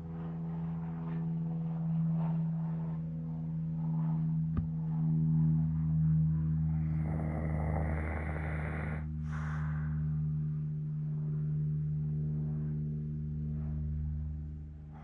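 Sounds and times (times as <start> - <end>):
steady low hum: 0.0 - 15.0
dog snoring: 6.7 - 9.6.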